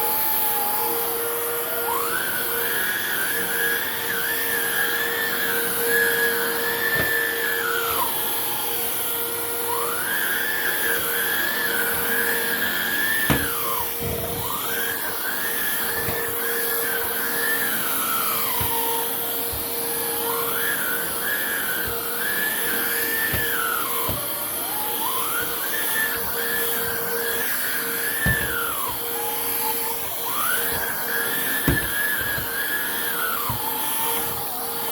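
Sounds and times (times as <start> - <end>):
cordless vacuum running: 0.0 - 34.9.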